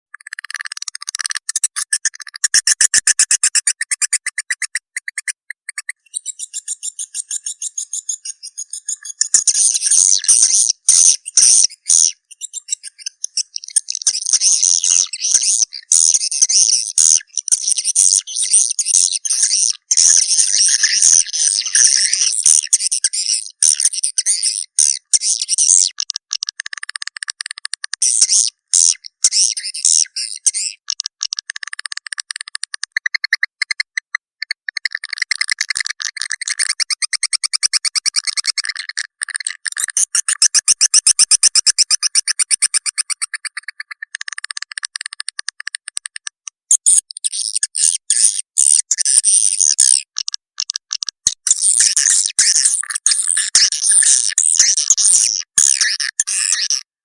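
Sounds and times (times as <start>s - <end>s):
swiftlet lure call chirps: 0.1s - 25.8s, 32.4s - 45.9s.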